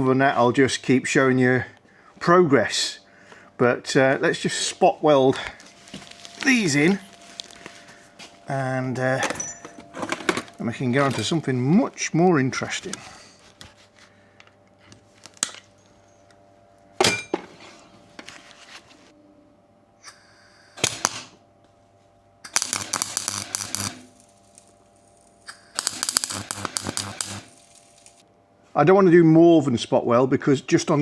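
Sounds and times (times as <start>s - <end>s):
welding crackling: 5.5s - 8.6s, 15.2s - 15.6s, 22.5s - 28.2s.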